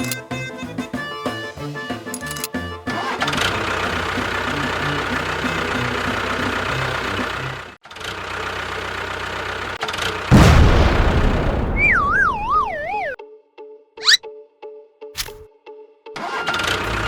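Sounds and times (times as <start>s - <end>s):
engine idling with knocking: 2.2s - 10.3s.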